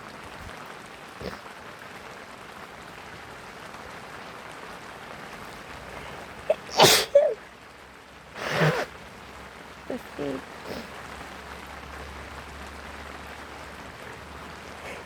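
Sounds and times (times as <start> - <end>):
rain falling: 0.0 - 15.0
person sneezing: 6.5 - 7.4, 8.4 - 8.9, 9.9 - 10.9
short vocal ah: 9.9 - 10.9.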